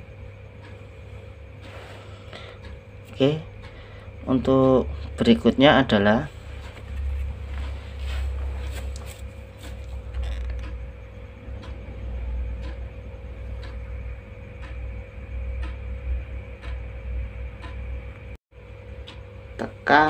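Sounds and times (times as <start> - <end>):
low room hum: 0.0 - 20.0
clock ticking: 0.2 - 0.8, 2.6 - 6.8, 9.7 - 18.3, 18.9 - 19.8.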